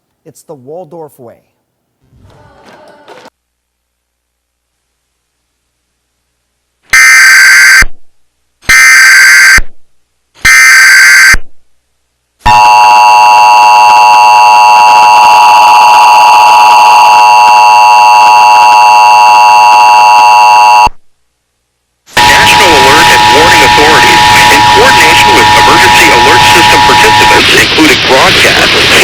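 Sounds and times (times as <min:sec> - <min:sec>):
harsh data tone bursts: 0:22.2 - 0:29.0.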